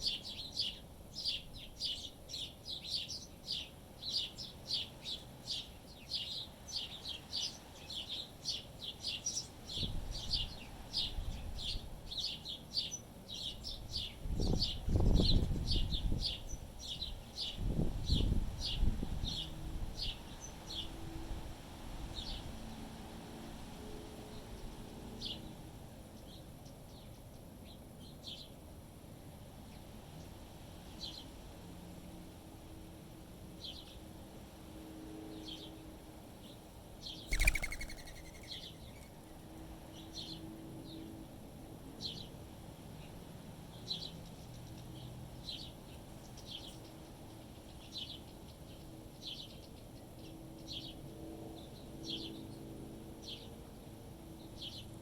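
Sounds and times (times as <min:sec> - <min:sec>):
small birds chirping: 0:00.0 - 0:20.9, 0:36.4 - 0:40.4.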